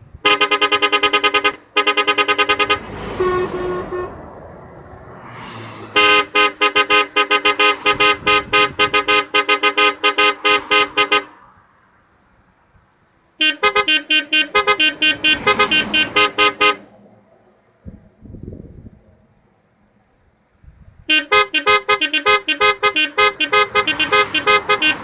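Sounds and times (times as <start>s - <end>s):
car horn playing a melody: 0.2s - 4.4s, 5.8s - 11.4s, 13.4s - 16.9s, 21.1s - 25.0s.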